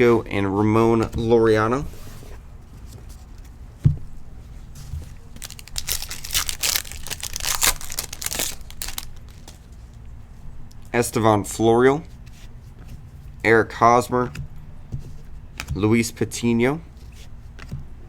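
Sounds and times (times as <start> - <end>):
wrapper tearing and crinkling: 5.3 - 9.6.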